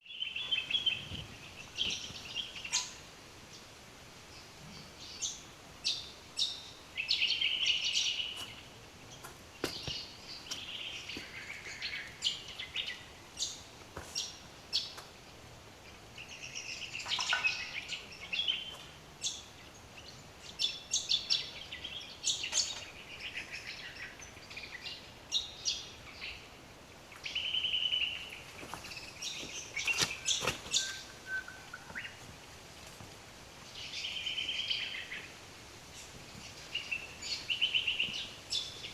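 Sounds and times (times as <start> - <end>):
birds chirping: 0.0 - 32.5, 33.6 - 38.9.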